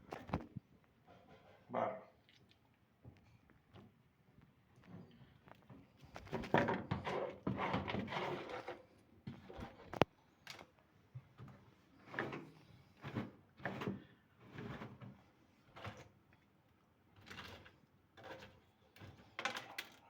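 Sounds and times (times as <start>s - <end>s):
faint scraping of mud: 6.0s - 10.1s.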